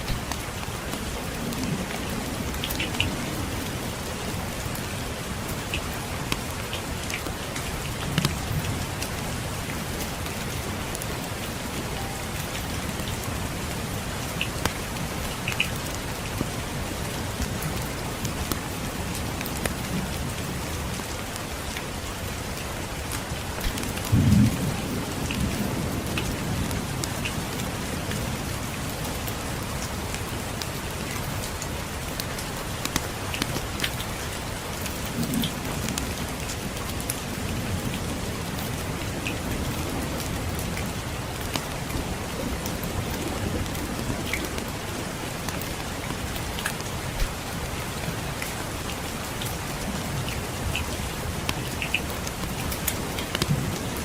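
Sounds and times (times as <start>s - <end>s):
steady rain: 0.0s - 54.0s
distant thunder rumble: 23.6s - 27.6s.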